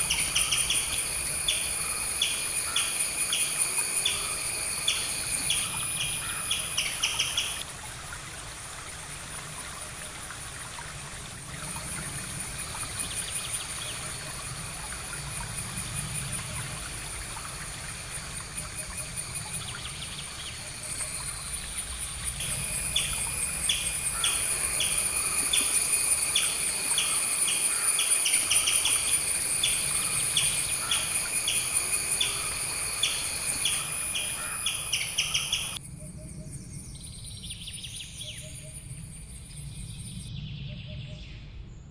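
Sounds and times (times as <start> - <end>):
high-pitched insect trill: 0.0 - 7.6, 11.6 - 40.3.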